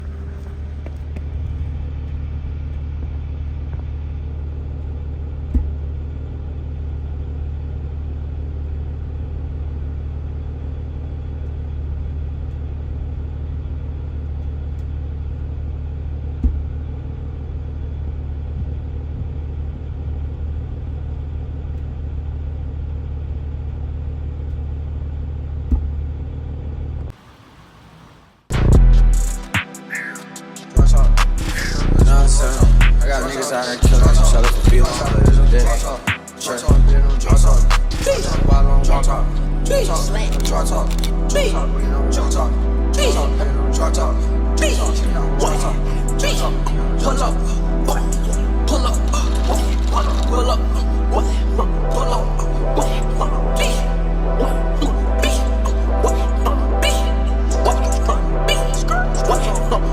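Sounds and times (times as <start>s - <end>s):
short sharp engine thumps: 0.0s - 6.8s, 16.2s - 17.2s, 25.5s - 29.6s
car engine rumbling: 0.0s - 29.6s, 30.8s - 59.9s.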